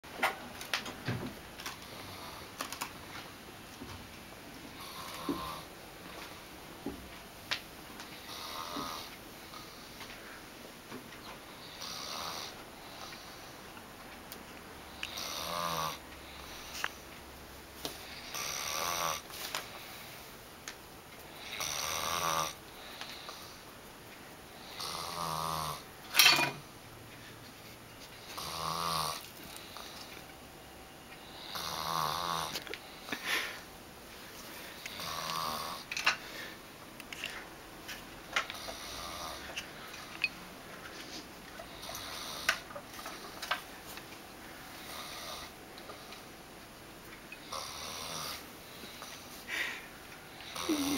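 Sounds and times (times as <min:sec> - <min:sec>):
man snoring: 0:04.8 - 0:05.7, 0:08.2 - 0:09.1, 0:11.6 - 0:12.6, 0:15.0 - 0:16.0, 0:18.1 - 0:19.2, 0:21.4 - 0:22.6, 0:24.6 - 0:25.8, 0:28.3 - 0:29.3, 0:31.3 - 0:32.6, 0:34.8 - 0:35.9, 0:38.5 - 0:39.4, 0:41.7 - 0:42.6, 0:44.8 - 0:45.5, 0:47.4 - 0:48.4, 0:50.4 - 0:50.9.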